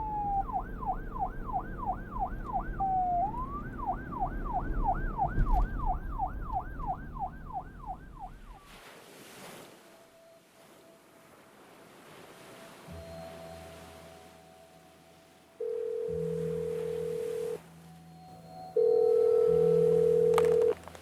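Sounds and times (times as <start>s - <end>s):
emergency siren yelping and wailing: 0.0s - 8.7s.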